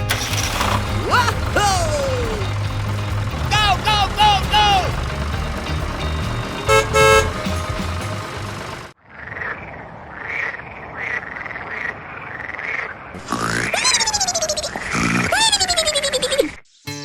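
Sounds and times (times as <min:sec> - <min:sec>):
horn toots: 0:00.0 - 0:08.9
engine-like drone: 0:00.0 - 0:09.0.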